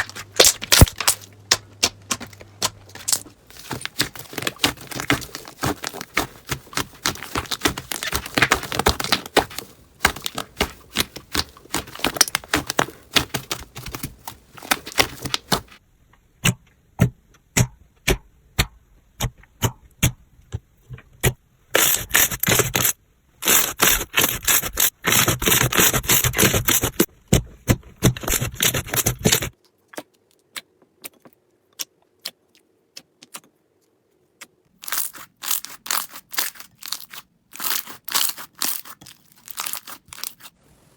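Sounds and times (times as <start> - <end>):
crunchy slime crackling: 0.0 - 15.8, 34.8 - 40.6.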